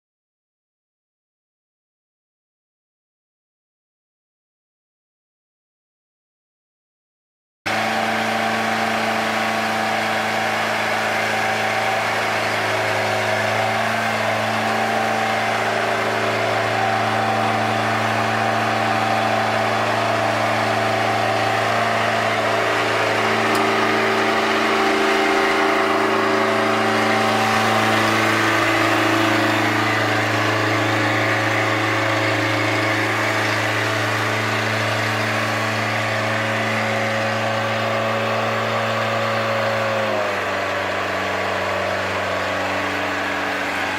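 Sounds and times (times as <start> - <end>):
skid steer diesel engine running: 7.7 - 43.9.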